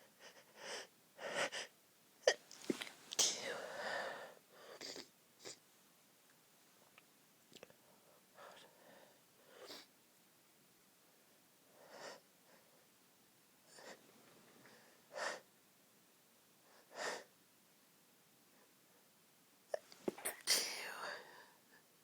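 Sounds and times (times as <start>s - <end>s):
woman's stifled sneezes: 20.0s - 21.2s.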